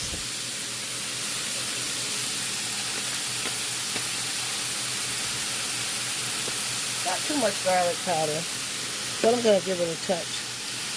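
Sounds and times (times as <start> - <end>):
meat sizzling in a pan: 0.0 - 10.9
faint ticks and pops: 2.9 - 4.1.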